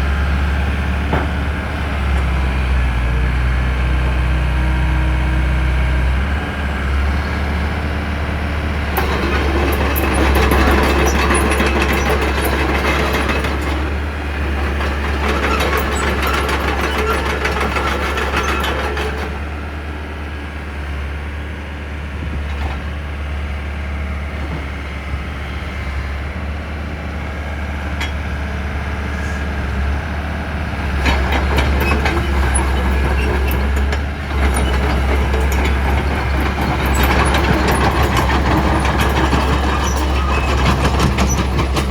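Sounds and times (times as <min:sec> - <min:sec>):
excavator diesel engine running: 0:00.0 - 0:41.9
heavy metallic clattering: 0:31.0 - 0:41.9.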